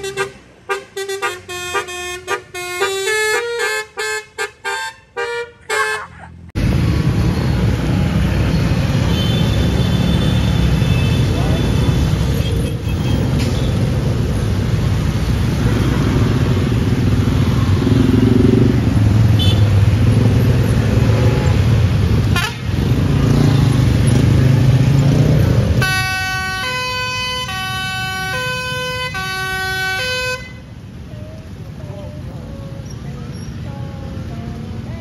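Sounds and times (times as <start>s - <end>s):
musical bus horn tune: 0.0s - 6.2s, 22.3s - 22.8s, 25.8s - 30.8s
road noise: 0.0s - 35.0s
heavy vehicle engine rumble: 27.4s - 35.0s.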